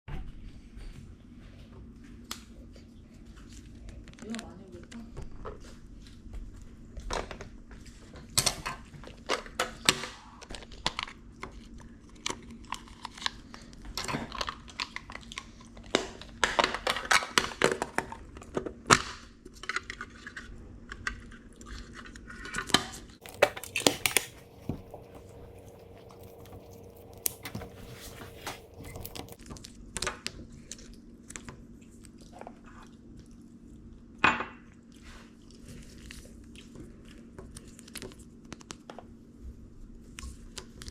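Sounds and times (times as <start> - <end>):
paper and plastic crinkling: 21.1 - 32.2.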